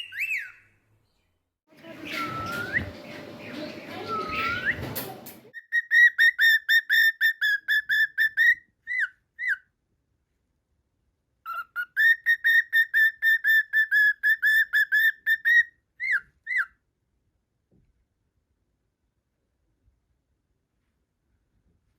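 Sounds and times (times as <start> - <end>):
cockatiel whistling: 2.0 - 3.2, 3.9 - 5.0, 5.6 - 9.6, 11.5 - 16.7.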